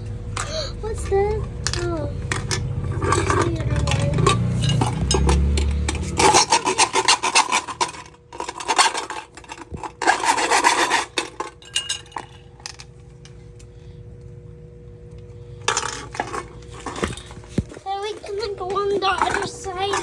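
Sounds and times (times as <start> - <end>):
faint steady hum: 0.0 - 20.0
metal can scraping and crunching: 0.4 - 12.8, 15.7 - 20.0.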